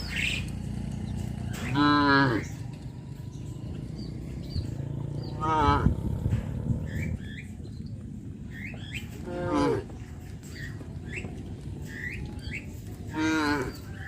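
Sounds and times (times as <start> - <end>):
cattle mooing: 1.5 - 2.7, 4.7 - 7.0, 9.2 - 10.0, 13.1 - 14.0.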